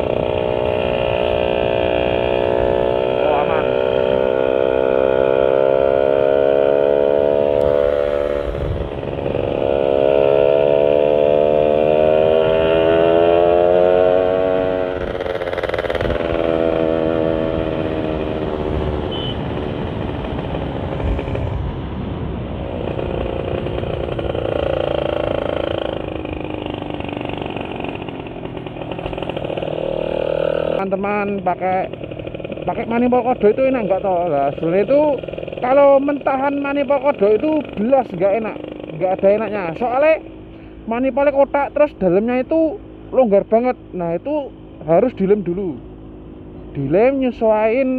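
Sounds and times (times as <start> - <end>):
two-stroke motorcycle engine: 0.0 - 21.8, 22.6 - 47.9
wind rumbling on microphone: 7.5 - 9.8, 14.8 - 26.8.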